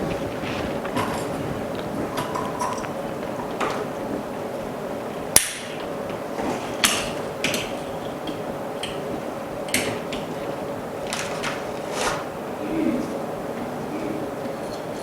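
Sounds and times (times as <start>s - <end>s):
hand tools clicking and tapping: 0.0s - 4.0s, 5.3s - 6.2s, 6.8s - 12.1s
faint machine hum: 0.0s - 15.0s.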